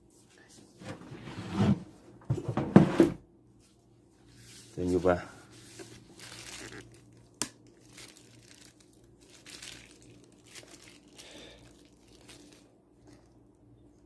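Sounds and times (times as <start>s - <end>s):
faint rustling handling noise: 3.5s - 14.0s.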